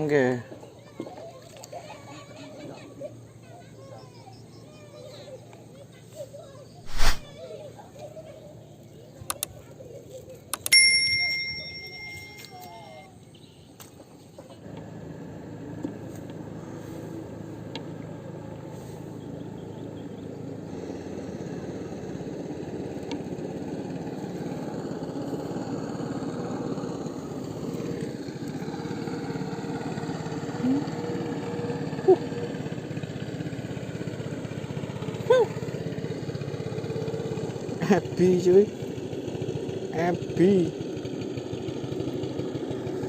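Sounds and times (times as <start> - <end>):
short sharp sounds: 6.9 - 7.3.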